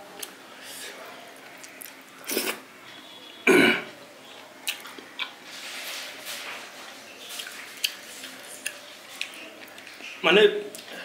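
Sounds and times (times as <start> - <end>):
person's throat sound: 3.4 - 4.0
mouth clicks while eating: 4.6 - 5.4.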